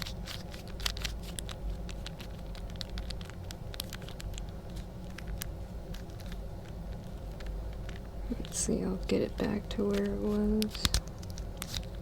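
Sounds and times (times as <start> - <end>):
puzzle cube clicking: 0.0 - 8.6, 9.8 - 12.0.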